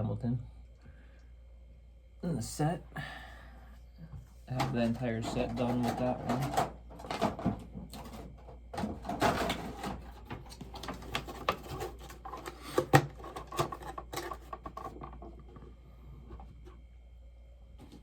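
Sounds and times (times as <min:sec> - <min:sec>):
boxes rustling and clicking: 0:04.5 - 0:16.8.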